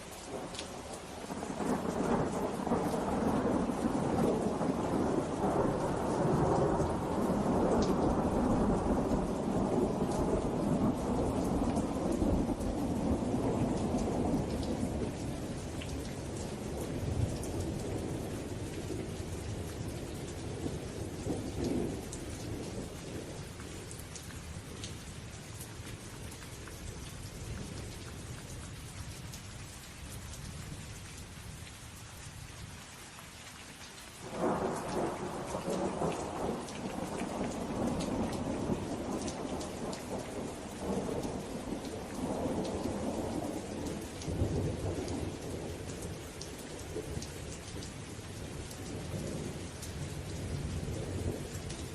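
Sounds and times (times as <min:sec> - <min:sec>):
steady rain: 0:00.0 - 0:51.9
rolling thunder: 0:01.3 - 0:23.3, 0:34.2 - 0:46.2.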